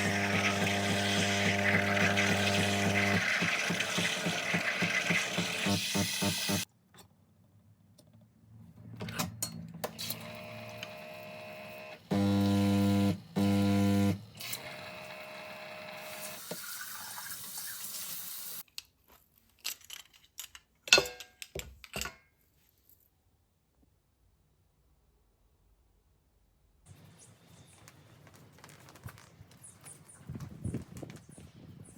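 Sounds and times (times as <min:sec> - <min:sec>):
loud humming pump buzzes: 0:00.0 - 0:04.5, 0:10.2 - 0:16.4
coffee machine running: 0:00.0 - 0:06.6, 0:10.0 - 0:16.6
water flowing: 0:00.0 - 0:06.6, 0:16.1 - 0:18.6.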